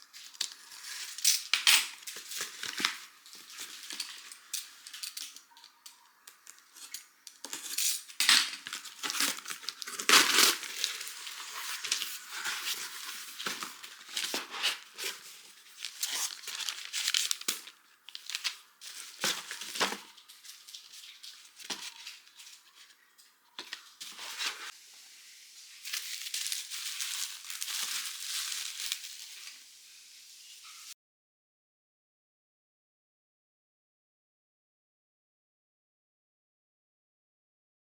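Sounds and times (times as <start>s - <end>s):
plastic and paper crinkling: 0.0s - 24.8s, 25.6s - 29.8s.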